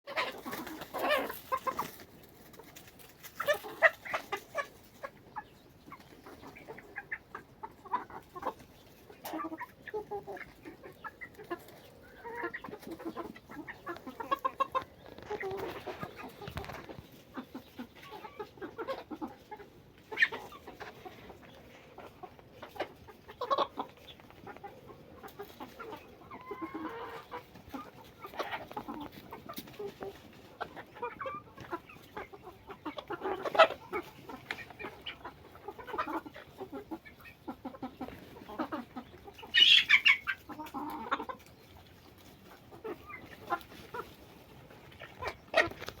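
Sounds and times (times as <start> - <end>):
chickens clucking: 0.0 - 46.0
high-pitched chicken call: 39.4 - 41.1.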